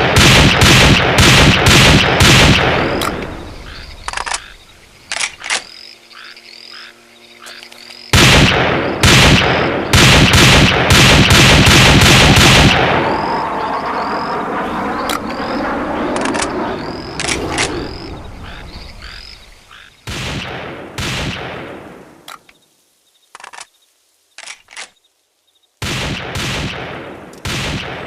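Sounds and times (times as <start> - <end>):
rifle firing in quick strings: 0.0 - 5.7, 8.2 - 12.9.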